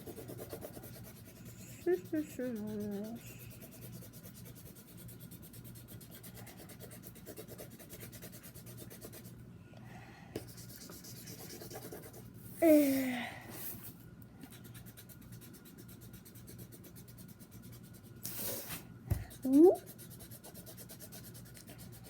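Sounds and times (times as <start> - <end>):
pen scratching on paper: 0.0 - 9.3, 10.5 - 12.2.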